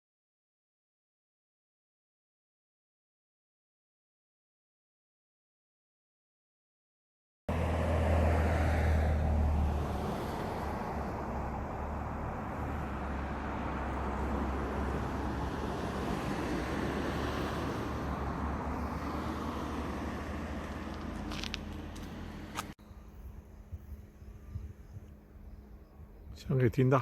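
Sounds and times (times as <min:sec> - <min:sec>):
wind noise on microphone: 0:23.3 - 0:26.5.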